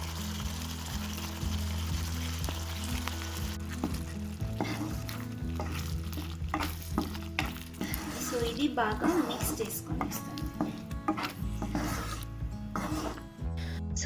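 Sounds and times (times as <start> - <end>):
gravy sizzling in a pan: 0.0 - 13.4
spoon knocking against pan: 4.6 - 13.1.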